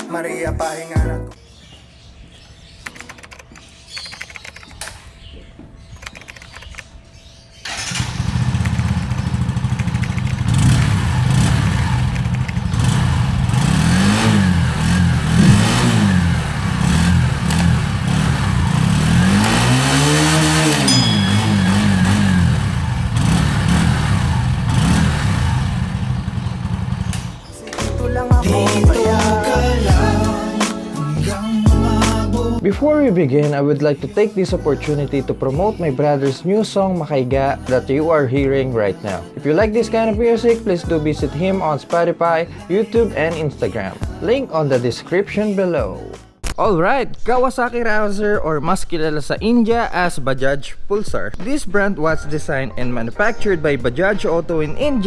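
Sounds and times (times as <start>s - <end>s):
motorcycle engine idling and revving: 7.7s - 27.4s.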